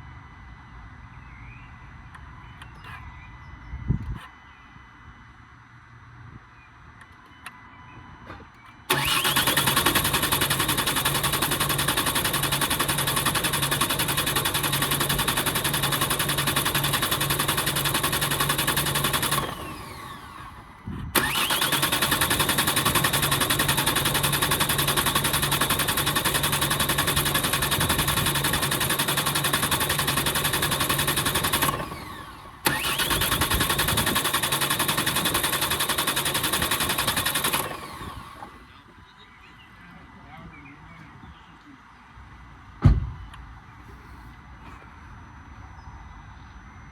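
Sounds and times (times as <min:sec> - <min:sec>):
diesel engine cranking without starting: 0:08.9 - 0:38.9.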